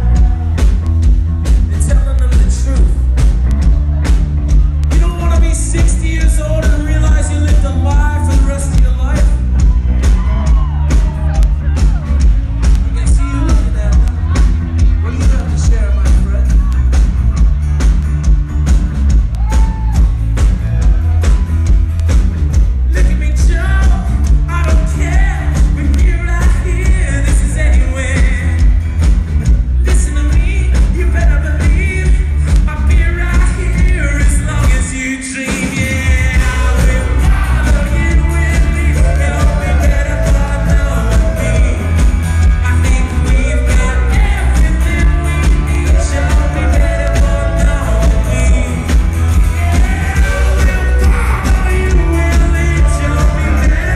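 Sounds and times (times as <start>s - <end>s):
drums: 0.0s - 53.9s
heavy bass: 0.0s - 53.9s
rock band playing live: 0.0s - 53.9s
lead singer singing: 4.5s - 17.1s, 22.9s - 28.8s, 29.7s - 53.9s.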